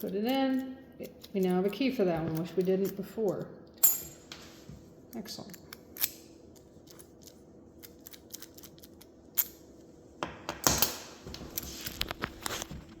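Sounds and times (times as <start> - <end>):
rubbing and handling noise: 3.9 - 5.0, 6.0 - 13.0.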